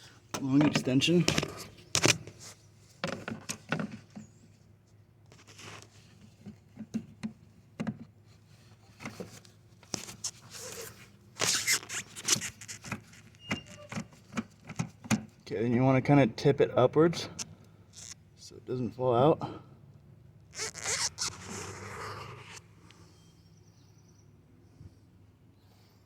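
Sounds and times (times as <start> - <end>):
rustling: 9.1 - 14.0, 20.5 - 22.7.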